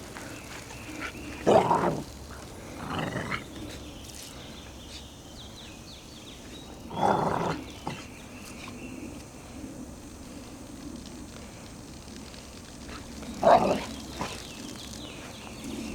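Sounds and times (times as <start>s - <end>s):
puppy growling: 1.0s - 3.9s, 6.7s - 8.2s, 12.9s - 14.8s.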